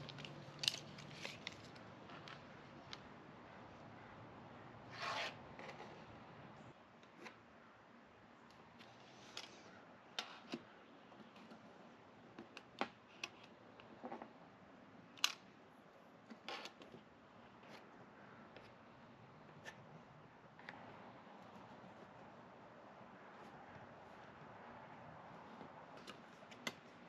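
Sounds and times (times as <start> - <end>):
small parts clicking: 0.0 - 3.0.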